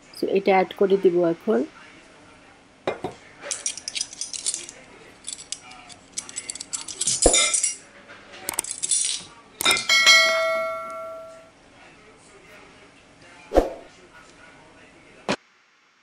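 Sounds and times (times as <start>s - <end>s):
ringing clink: 9.0s - 11.5s.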